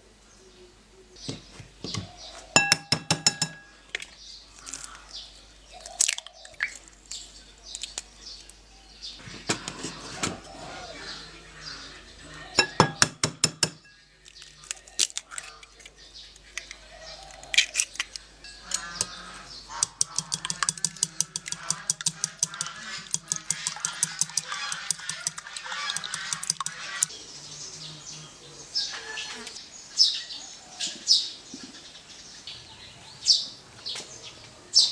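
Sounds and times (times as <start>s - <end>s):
dishes and cutlery clinking: 2.6s - 3.8s, 12.6s - 14.0s, 18.5s - 27.1s
sharp clicks: 18.1s - 27.1s.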